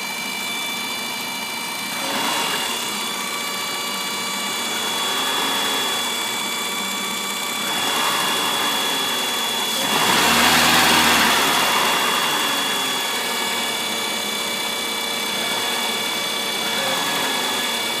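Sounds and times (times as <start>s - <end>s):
engine revving: 0.0s - 18.0s
high-pitched engine whine: 0.0s - 18.0s
car engine idling: 9.0s - 17.0s.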